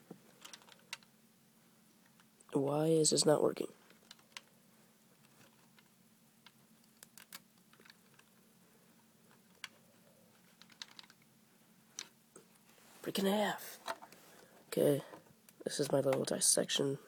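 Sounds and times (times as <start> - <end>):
plastic pieces clicking: 5.4 - 8.4, 10.6 - 11.2.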